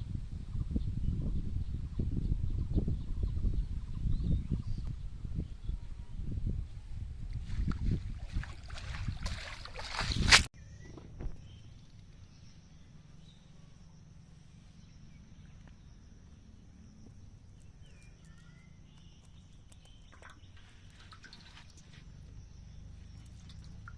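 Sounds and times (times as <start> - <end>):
short bird chirps: 17.6 - 21.2.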